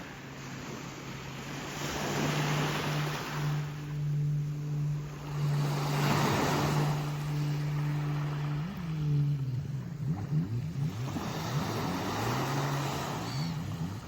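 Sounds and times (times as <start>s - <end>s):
sea waves washing in: 0.0s - 14.0s
steady low hum: 0.0s - 14.0s.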